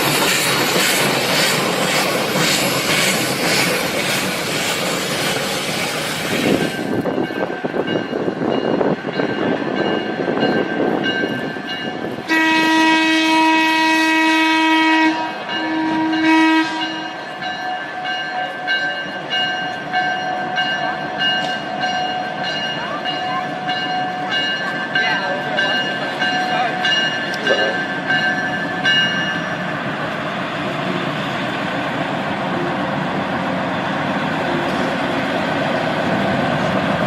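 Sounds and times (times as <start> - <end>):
steam train running: 0.0 - 37.0
steam locomotive whistle: 12.3 - 18.7.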